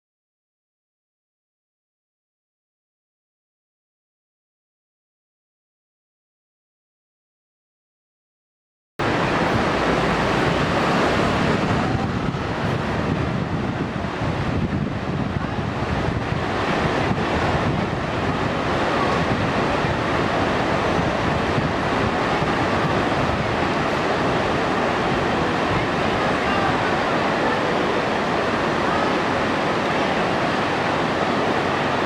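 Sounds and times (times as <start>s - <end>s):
steady rushing outdoor noise: 9.0s - 32.0s.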